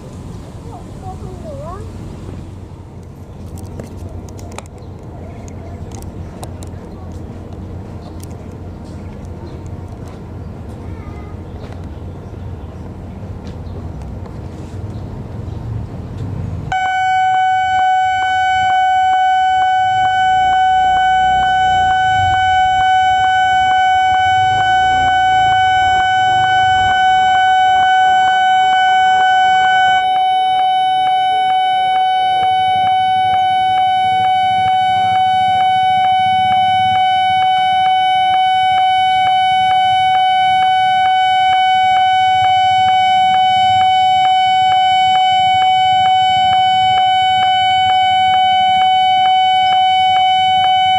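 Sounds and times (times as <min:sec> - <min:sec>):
level crossing alarm: 0:16.7 - 0:50.9.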